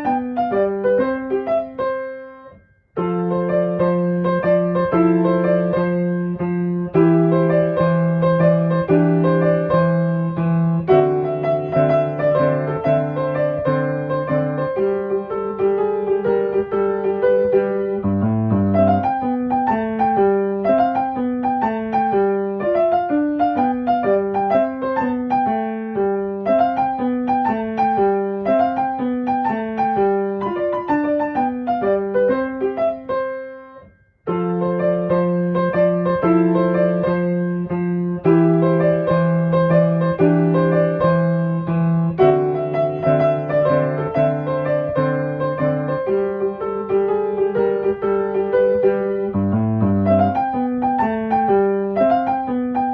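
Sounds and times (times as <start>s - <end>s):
piano music: 0.0s - 52.9s.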